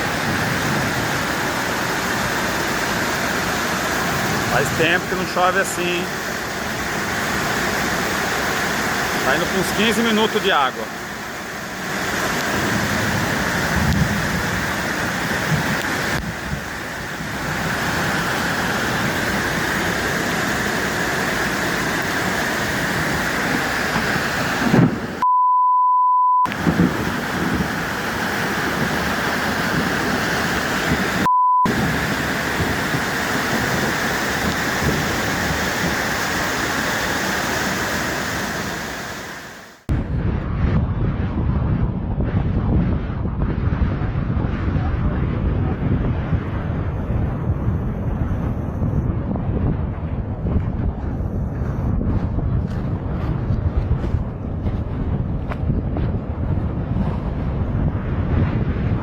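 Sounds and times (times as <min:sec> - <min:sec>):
floodwater rushing: 0:00.0 - 0:25.2, 0:26.5 - 0:39.9
heavy rain pouring: 0:00.0 - 0:25.2, 0:26.5 - 0:39.9
censor bleep: 0:25.2 - 0:26.6, 0:31.2 - 0:31.7.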